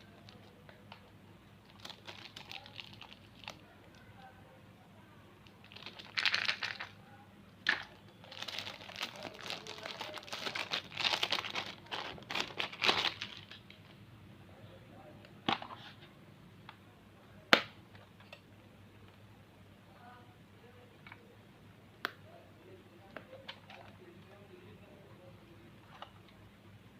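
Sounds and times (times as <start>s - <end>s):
foil wrappers crinkling and tearing: 1.7s - 3.6s, 5.6s - 7.0s, 8.2s - 13.6s.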